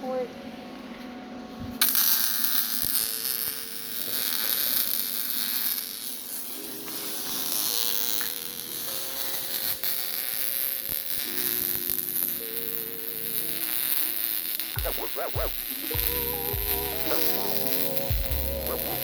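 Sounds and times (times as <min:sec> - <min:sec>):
welding arc crackling hiss: 0:01.8 - 0:19.0.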